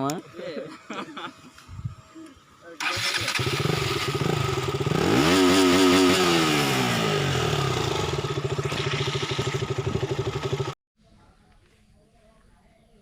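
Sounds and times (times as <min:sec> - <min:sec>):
motorcycle engine idling and revving: 0:02.0 - 0:10.8.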